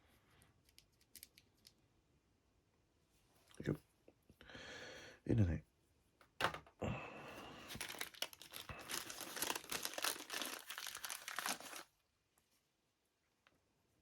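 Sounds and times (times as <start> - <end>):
plastic bag crinkling: 7.7 - 11.9.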